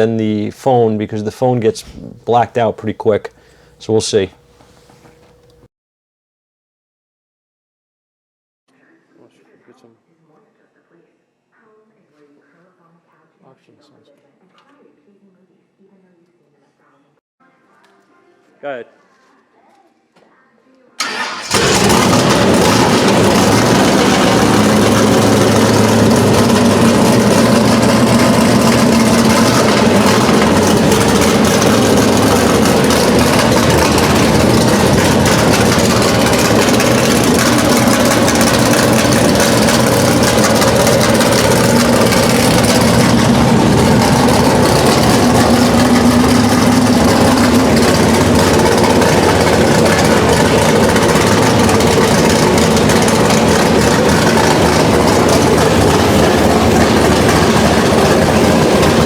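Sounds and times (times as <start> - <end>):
car engine idling loudly: 21.0 - 59.0.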